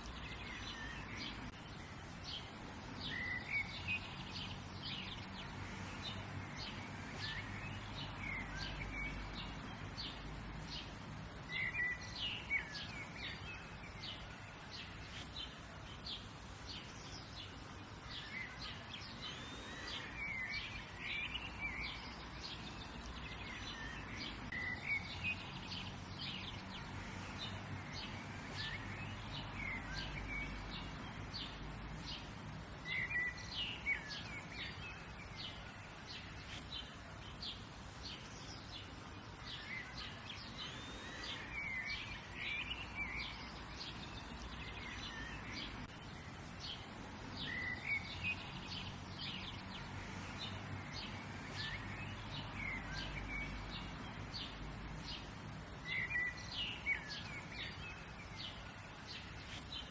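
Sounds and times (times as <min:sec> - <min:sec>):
low background noise: 0:00.0 - 0:59.9
birds chirping and calling: 0:18.1 - 0:59.9.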